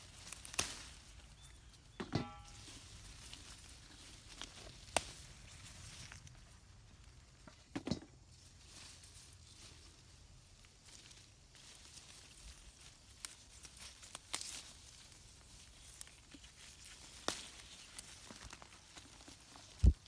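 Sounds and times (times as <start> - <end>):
stems snapping: 0.0 - 6.4, 10.8 - 20.0
foliage rustling: 0.0 - 20.0.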